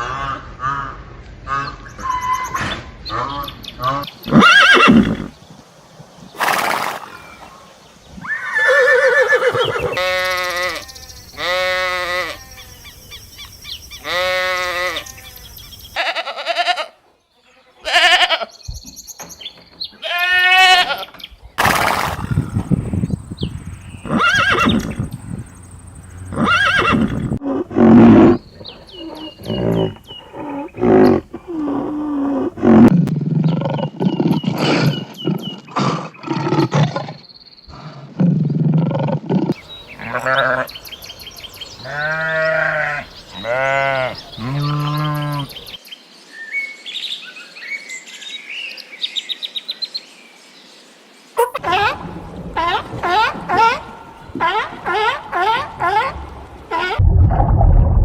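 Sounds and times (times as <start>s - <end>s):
farm animal calls: 19.9s - 32.0s, 39.5s - 45.8s, 51.4s - 57.0s.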